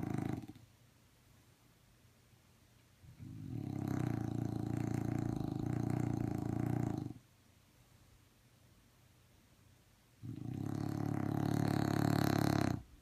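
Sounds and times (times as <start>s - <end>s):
dog snoring: 0.0s - 0.6s, 3.2s - 7.2s, 10.2s - 13.0s.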